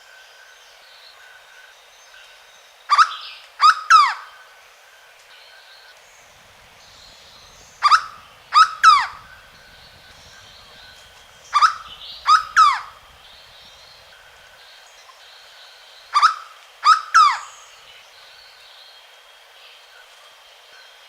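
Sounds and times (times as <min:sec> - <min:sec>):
faint birds or insects: 0:00.0 - 0:21.0
bird calling loud notes: 0:06.4 - 0:14.5.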